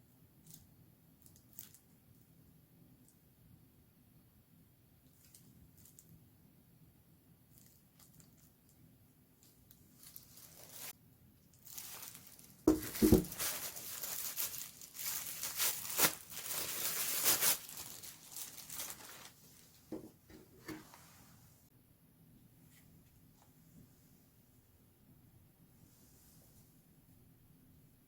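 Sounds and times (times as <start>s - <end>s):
packaging tearing and crinkling: 10.0s - 10.9s, 11.6s - 19.4s.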